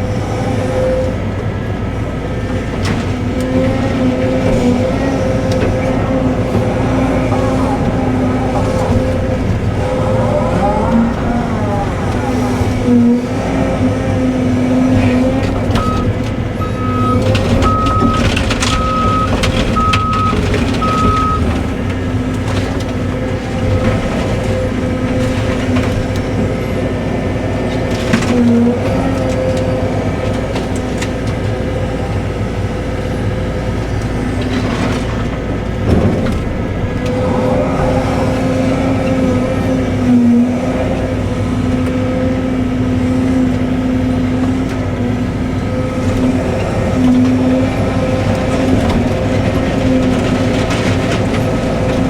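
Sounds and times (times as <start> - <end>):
diesel engine running: 0.0 - 52.0
short alarm beeps: 15.8 - 18.2, 18.8 - 21.5.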